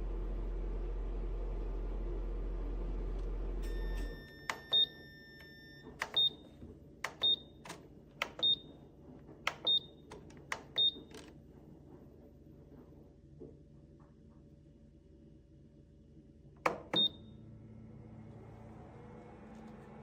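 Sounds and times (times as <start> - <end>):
low running hum: 0.0 - 20.0
control panel click: 7.0 - 8.6.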